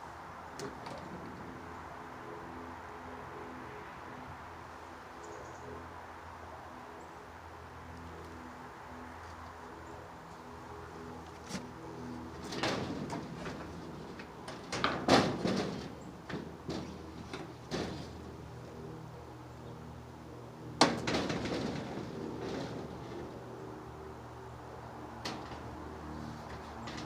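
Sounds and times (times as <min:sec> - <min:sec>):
knocks: 0:12.4 - 0:18.2, 0:20.8 - 0:22.9.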